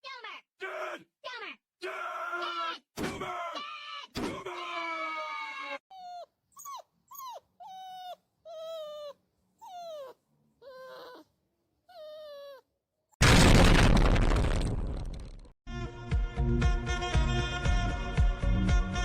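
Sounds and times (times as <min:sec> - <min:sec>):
dog whimpering and yelping: 0:05.9 - 0:12.7.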